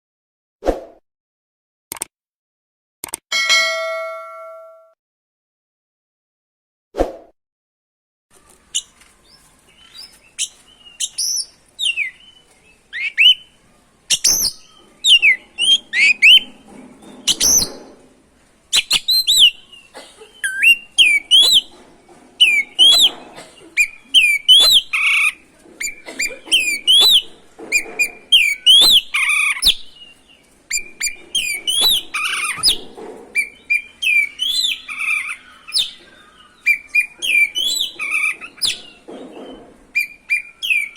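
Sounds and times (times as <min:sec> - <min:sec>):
bird singing: 0:08.4 - 0:17.8, 0:18.7 - 0:21.8, 0:22.4 - 0:40.9.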